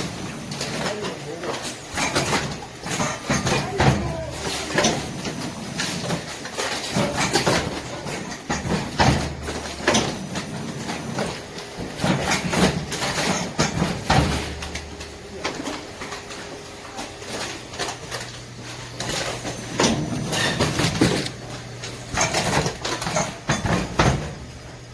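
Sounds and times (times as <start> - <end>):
machine clacks and knocks: 0.5 - 16.4, 22.1 - 24.4.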